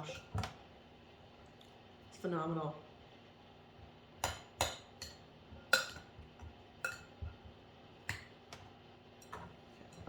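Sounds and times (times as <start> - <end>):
spoon clinking against bowl: 6.8 - 7.1.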